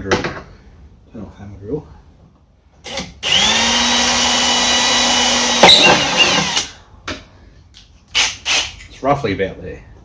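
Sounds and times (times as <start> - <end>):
power drill whining: 2.9 - 6.7
drill bit biting into plastic: 4.9 - 6.7.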